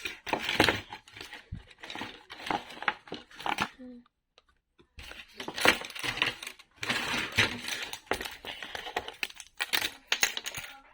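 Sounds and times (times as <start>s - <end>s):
puzzle pieces clicking and rattling: 5.3s - 10.9s.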